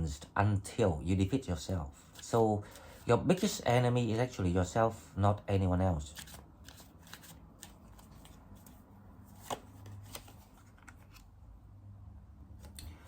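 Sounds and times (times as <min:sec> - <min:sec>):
cards rustling and flicking: 0:02.0 - 0:03.6, 0:06.1 - 0:11.4.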